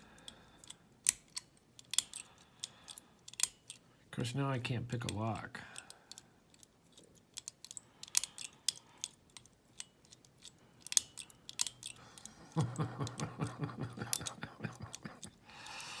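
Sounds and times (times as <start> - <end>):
lock pick metallic clicks and scrapes: 0.0 - 3.9, 5.0 - 12.4.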